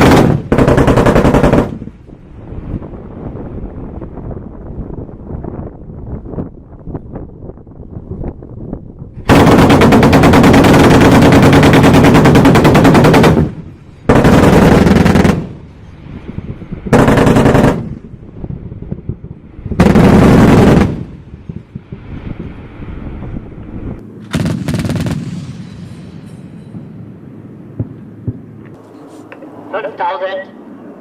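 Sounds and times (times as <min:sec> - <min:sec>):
autocannon bursts of rapid fire: 0:00.0 - 0:01.9, 0:09.3 - 0:15.6, 0:16.9 - 0:18.0, 0:19.8 - 0:21.2, 0:24.3 - 0:25.4.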